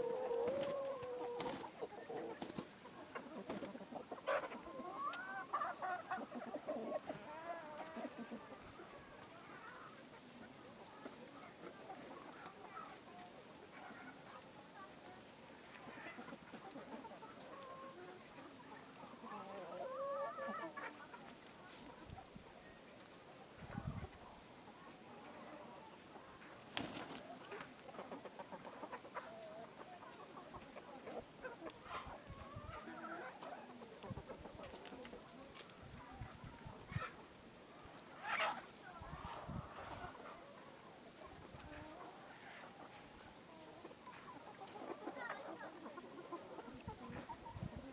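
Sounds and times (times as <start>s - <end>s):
hens clucking: 0.0s - 47.9s.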